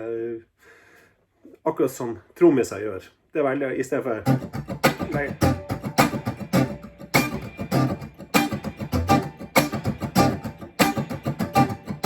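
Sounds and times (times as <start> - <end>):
guitar strummed percussively: 4.2 - 12.0.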